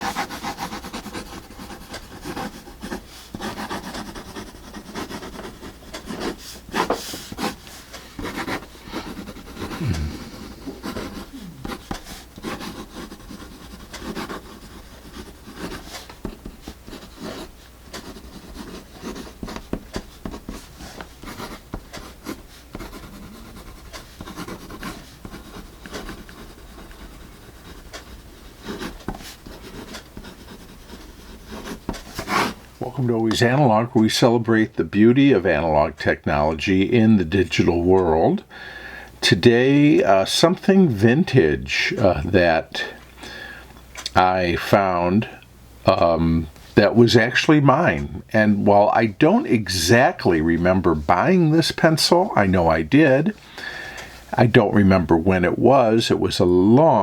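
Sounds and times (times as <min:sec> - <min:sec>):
pencil scratching on paper: 0:00.0 - 0:32.6.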